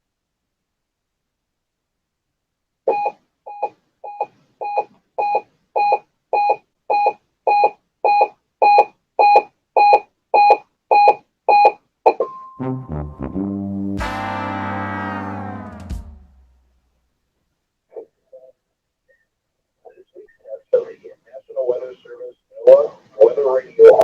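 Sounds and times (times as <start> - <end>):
electronic alarm beeping: 2.9 - 12.6.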